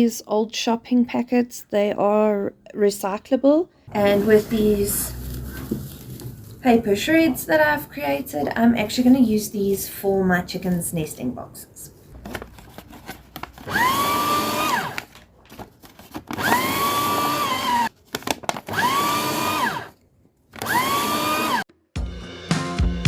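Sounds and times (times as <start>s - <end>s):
paper shredder motor whine: 4.0s - 7.0s, 13.6s - 15.2s, 16.3s - 17.9s, 18.6s - 20.0s, 20.6s - 21.7s.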